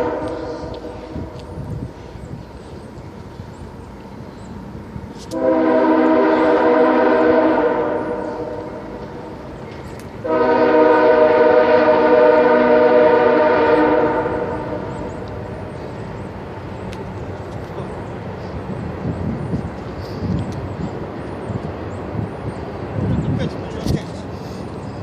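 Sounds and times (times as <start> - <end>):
train horn blast: 0.0 - 1.5, 5.3 - 9.3, 10.2 - 15.5
moving train noise: 0.0 - 25.0.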